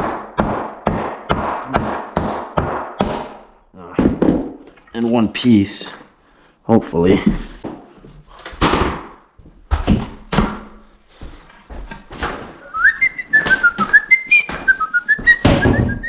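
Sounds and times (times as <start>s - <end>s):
sharp knocks: 0.0s - 4.6s, 8.4s - 10.7s, 15.3s - 16.0s
person whistling a tune: 12.6s - 16.0s.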